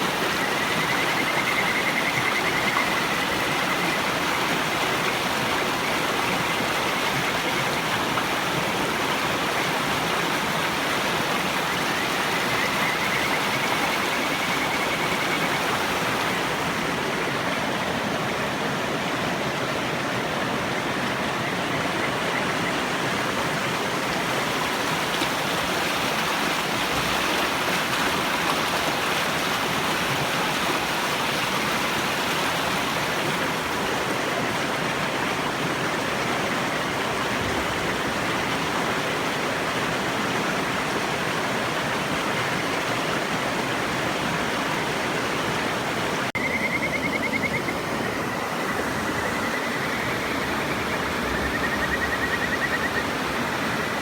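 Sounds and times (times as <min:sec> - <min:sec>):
frogs trilling: 0:00.0 - 0:08.8, 0:11.3 - 0:17.8, 0:20.6 - 0:30.0, 0:46.3 - 0:54.0
river rushing: 0:00.0 - 0:54.0.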